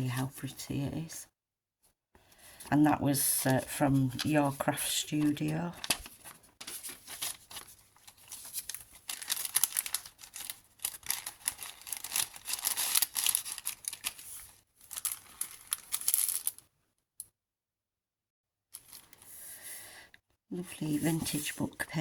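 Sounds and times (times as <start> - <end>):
paper pages rustling and crinkling: 3.4 - 16.6, 18.8 - 19.2, 20.8 - 21.8.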